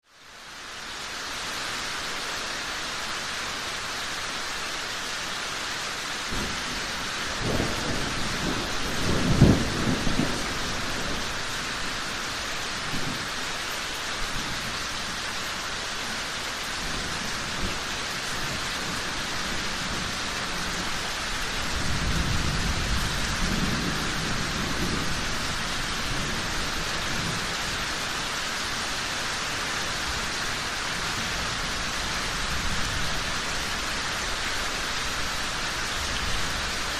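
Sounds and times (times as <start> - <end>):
steady rain: 0.0 - 36.9
thunder rumbling: 6.3 - 11.5, 21.6 - 27.6.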